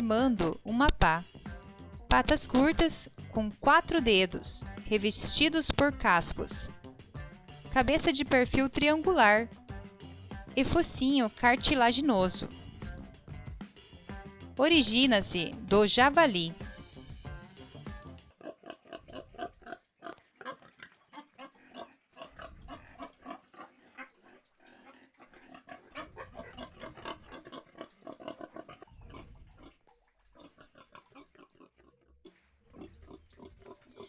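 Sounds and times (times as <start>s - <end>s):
pigs grunting: 17.6s - 34.0s.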